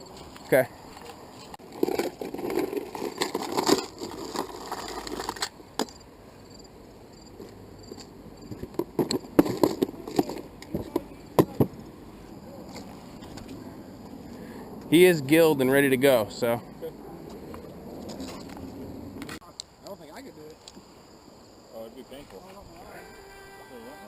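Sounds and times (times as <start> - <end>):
rustling: 0.1 - 5.6.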